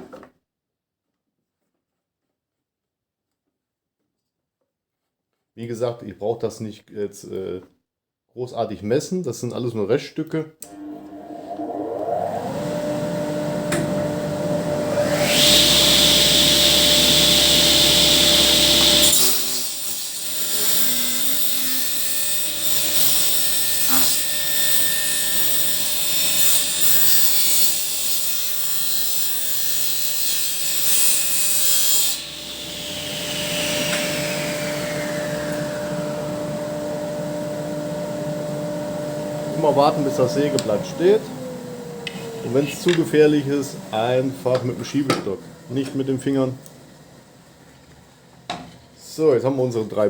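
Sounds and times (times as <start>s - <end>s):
saw blade winding down: 10.6s - 36.6s, 38.8s - 47.0s
table saw cutting wood: 10.6s - 49.8s.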